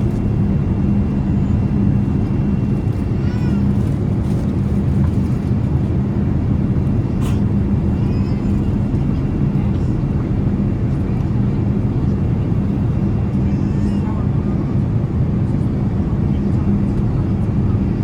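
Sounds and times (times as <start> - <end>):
airliner cabin drone: 0.0 - 18.0
faint voices: 7.0 - 18.0.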